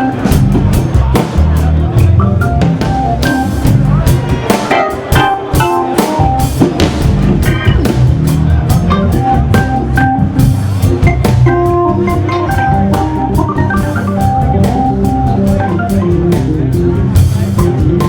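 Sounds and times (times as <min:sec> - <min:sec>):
drum kit: 0:00.0 - 0:18.0
organ playing soul-jazz: 0:00.0 - 0:18.0.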